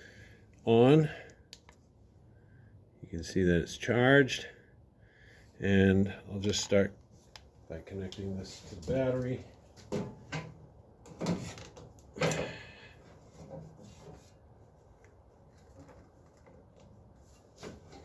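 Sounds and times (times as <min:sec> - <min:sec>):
faint handling noises: 0:06.3 - 0:18.0.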